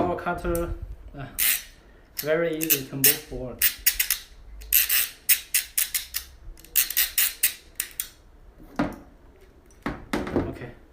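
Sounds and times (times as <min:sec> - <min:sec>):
ratchet clicking: 0:01.4 - 0:08.2.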